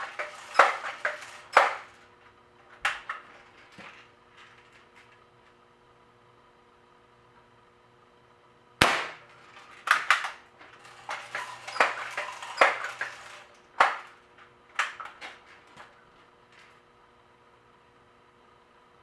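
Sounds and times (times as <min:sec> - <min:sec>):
air rifle firing crack: 0:08.8 - 0:10.2.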